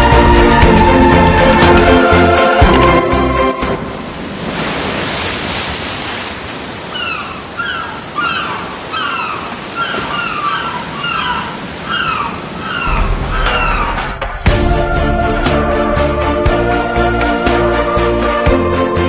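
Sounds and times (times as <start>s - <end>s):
gulls calling: 3.6s - 14.4s
surf washing in: 3.6s - 15.7s.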